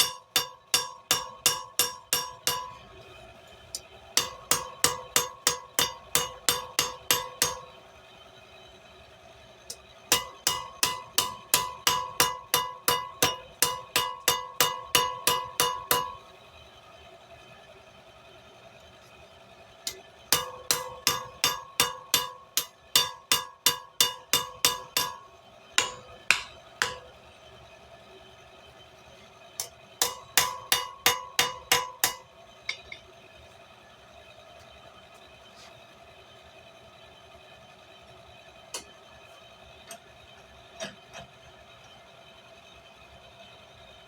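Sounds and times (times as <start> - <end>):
hammer ringing on anvil: 0.0 - 2.9, 4.2 - 7.8, 10.1 - 16.2, 19.9 - 27.2, 29.6 - 33.0.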